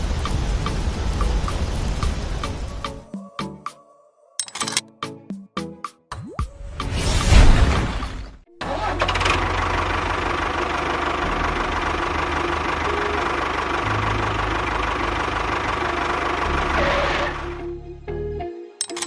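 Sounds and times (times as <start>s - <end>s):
engine running with knocking pulse: 8.6s - 17.6s.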